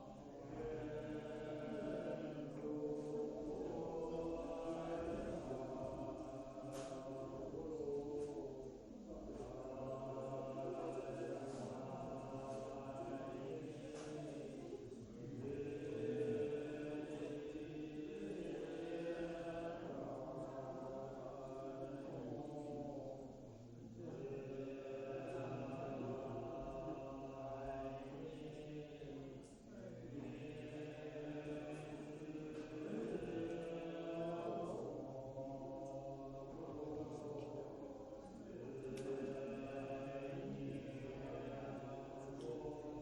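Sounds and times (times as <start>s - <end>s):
voices chanting: 0.0s - 43.0s.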